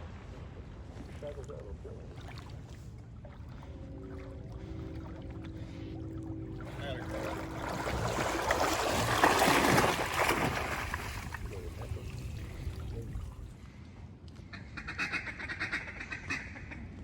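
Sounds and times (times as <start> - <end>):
duck quacks: 14.5 - 17.0.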